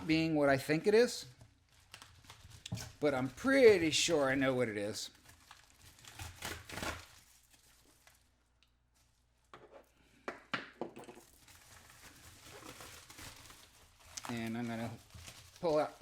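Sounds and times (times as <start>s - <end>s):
package crinkling and tearing: 1.5s - 9.1s, 11.2s - 16.0s
sharp crinkles and clicks: 1.7s - 3.0s, 11.2s - 16.0s.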